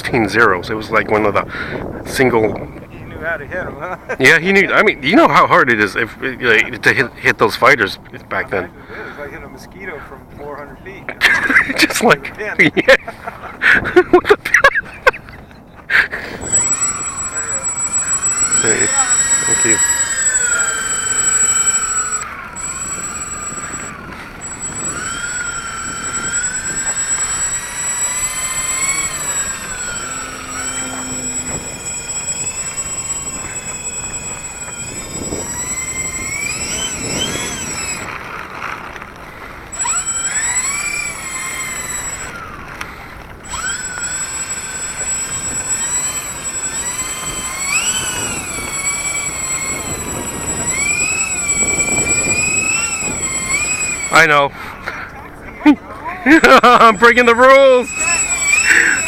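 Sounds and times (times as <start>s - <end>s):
electric motors and propellers whining: 0.0s - 59.0s
steady high-pitched whine: 16.0s - 59.0s.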